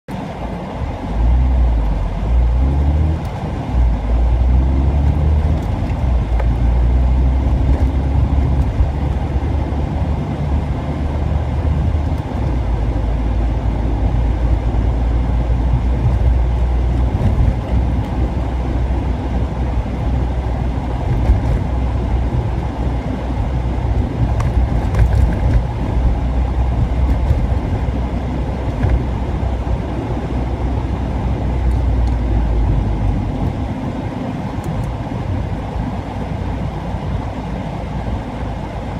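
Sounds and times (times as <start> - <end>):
car engine rumble: 0.1 - 38.9.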